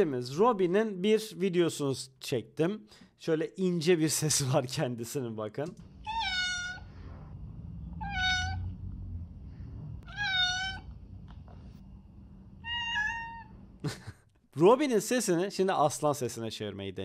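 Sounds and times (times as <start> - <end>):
cat meowing: 6.0 - 6.9, 8.0 - 8.7, 10.0 - 11.0, 12.6 - 13.6.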